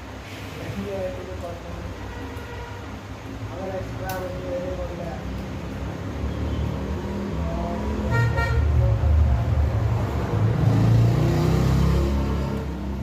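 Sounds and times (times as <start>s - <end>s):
road traffic rumble: 0.0s - 13.0s
vehicle horn toot: 8.1s - 8.7s.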